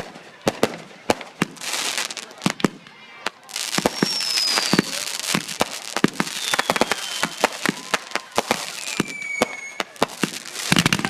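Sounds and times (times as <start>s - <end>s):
fireworks bangs and crackles: 0.0s - 11.0s
falling firework whistles: 3.6s - 11.0s.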